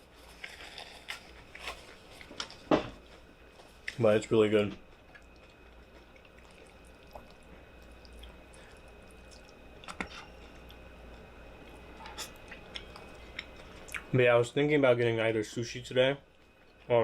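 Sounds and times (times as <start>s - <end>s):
faint chewing of food: 0.0s - 4.0s, 4.8s - 14.1s.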